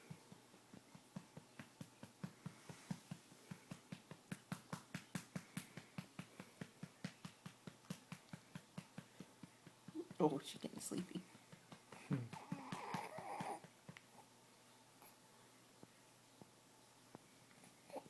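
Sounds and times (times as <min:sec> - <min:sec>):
hand patting baby's back: 0:00.0 - 0:14.1.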